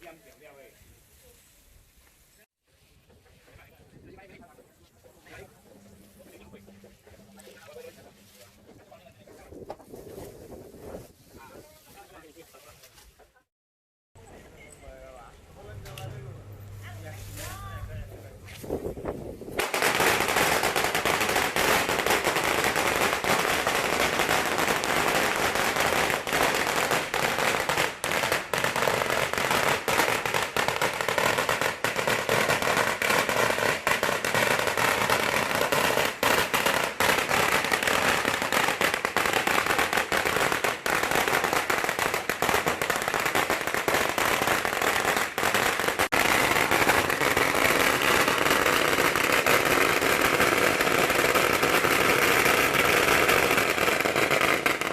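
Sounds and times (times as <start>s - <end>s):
firecrackers going off: 18.5s - 54.9s.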